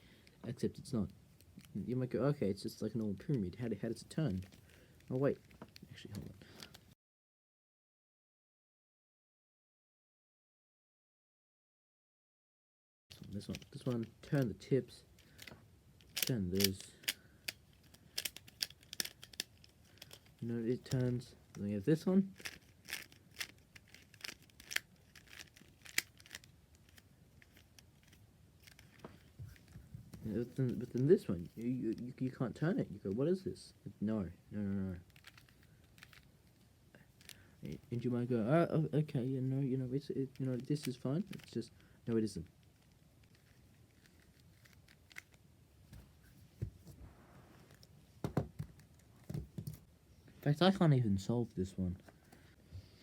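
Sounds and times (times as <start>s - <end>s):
plastic puzzle clicks and clacks: 13.1s - 14.6s, 15.2s - 21.3s, 22.4s - 29.8s, 35.1s - 36.2s, 40.0s - 45.4s.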